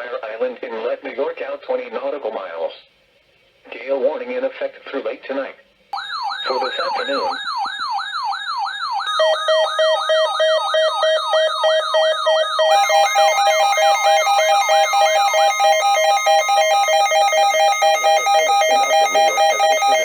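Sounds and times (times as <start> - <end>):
rapid beeping tones: 6.0 - 20.0
siren-like falling sweep: 6.0 - 20.0.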